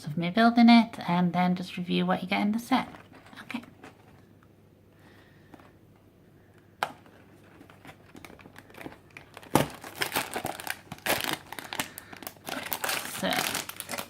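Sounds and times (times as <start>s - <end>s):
plastic bags crinkling: 7.1s - 14.0s.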